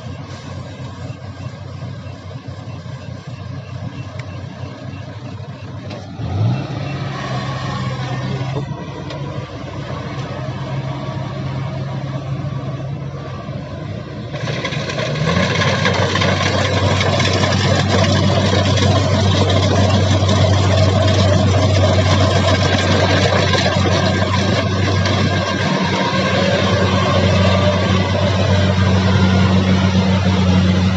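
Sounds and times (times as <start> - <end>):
mechanical machinery noise: 0.0 - 9.3, 14.2 - 30.9
combine harvester engine running: 0.0 - 30.9.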